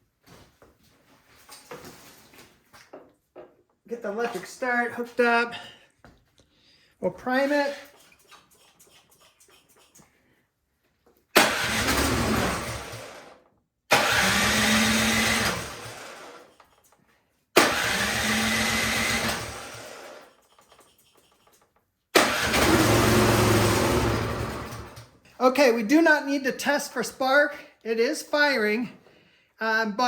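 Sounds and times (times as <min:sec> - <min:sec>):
snowblower engine running: 0:11.4 - 0:13.3, 0:13.9 - 0:16.4, 0:17.6 - 0:20.2, 0:22.2 - 0:25.0
electric starter cranking: 0:11.4 - 0:16.6, 0:17.6 - 0:21.6, 0:22.2 - 0:25.2.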